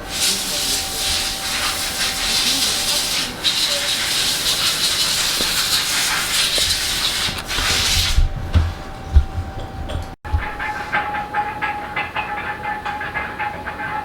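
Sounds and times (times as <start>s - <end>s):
machine grinding metal: 0.0s - 11.1s
low thuds: 7.4s - 11.0s.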